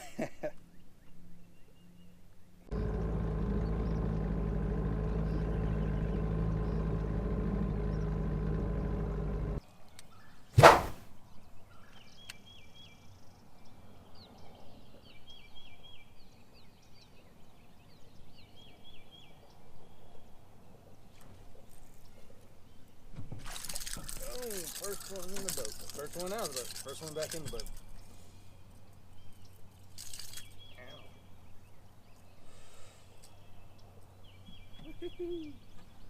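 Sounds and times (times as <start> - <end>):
faint outdoor background: 0.0 - 36.0
sharp whoosh: 10.6 - 11.1.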